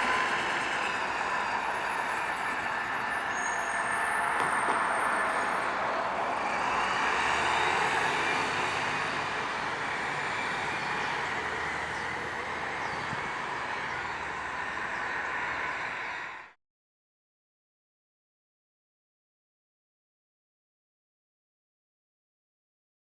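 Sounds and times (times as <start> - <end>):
bus engine running: 0.0 - 16.5
road noise: 0.0 - 16.6.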